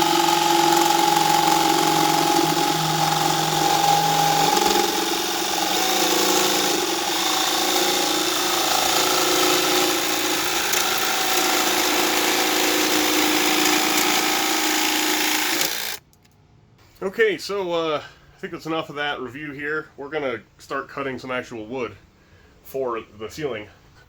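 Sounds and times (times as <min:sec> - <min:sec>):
jigsaw cutting wood: 0:00.0 - 0:16.0.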